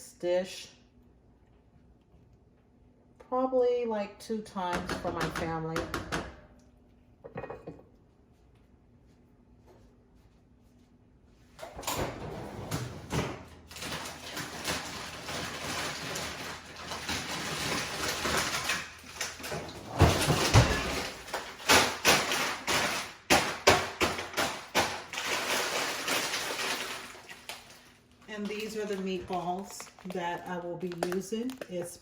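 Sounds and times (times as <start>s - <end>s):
plastic bag crinkling: 24.3s - 32.0s.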